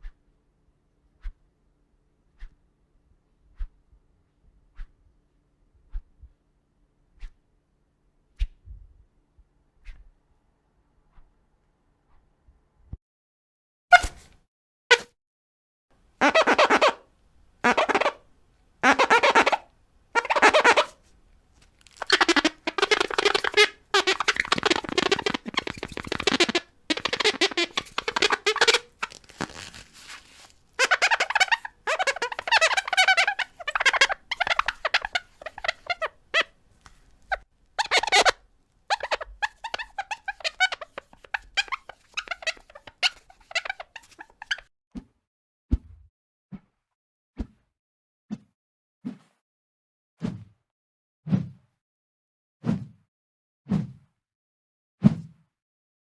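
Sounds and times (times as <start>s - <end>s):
fluttering chirpy swipes: 21.9s - 36.1s, 37.8s - 44.6s.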